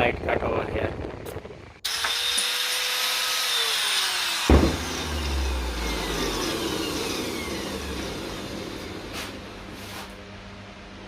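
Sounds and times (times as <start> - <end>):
angle grinder cutting metal: 1.8 - 10.0
sharp loud knock: 4.5 - 5.0.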